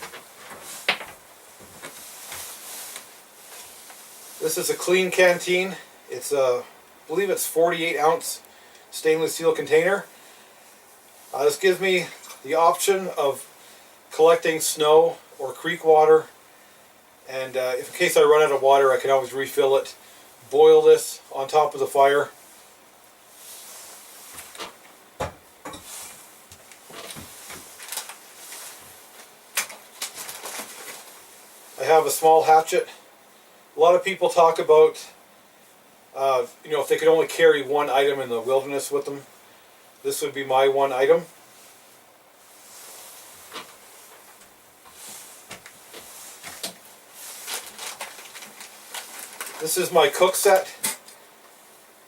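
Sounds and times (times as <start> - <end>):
rustling: 0.0 - 5.6, 21.6 - 32.6, 40.8 - 52.0.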